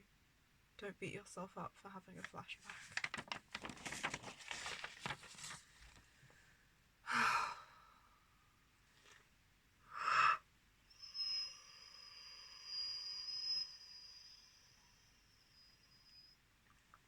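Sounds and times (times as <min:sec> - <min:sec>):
person sighing heavily: 0:07.1 - 0:08.0, 0:09.9 - 0:10.4
faint high-pitched tone: 0:10.9 - 0:16.5.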